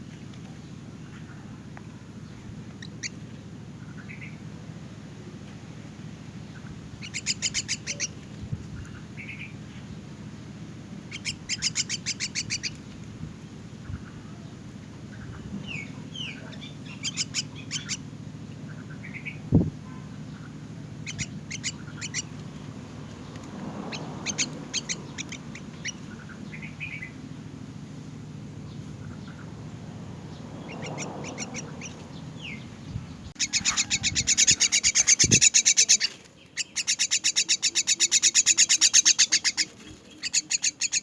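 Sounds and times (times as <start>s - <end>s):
steady low hum: 0.0s - 41.0s
young myna chirping: 6.6s - 9.6s, 11.1s - 13.0s, 15.1s - 18.1s, 21.0s - 22.4s, 23.9s - 27.2s, 30.3s - 41.0s.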